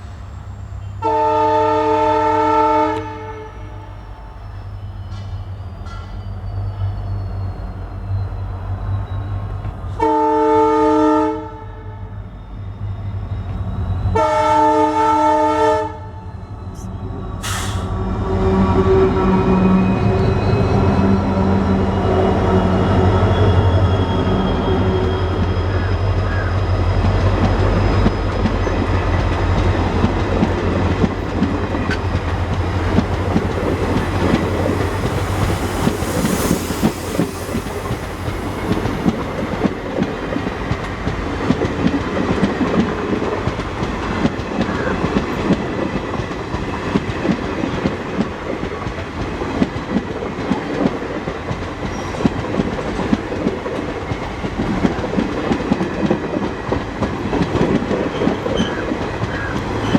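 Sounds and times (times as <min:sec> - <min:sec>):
train wheels clattering over joints: 0:25.0 - 0:59.9.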